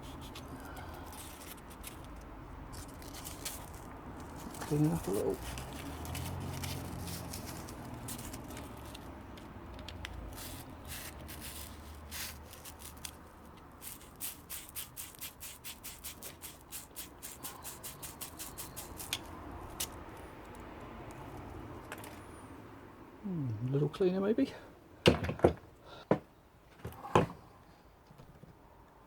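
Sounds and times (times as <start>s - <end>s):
scrubbing rusted metal: 10.3s - 20.0s.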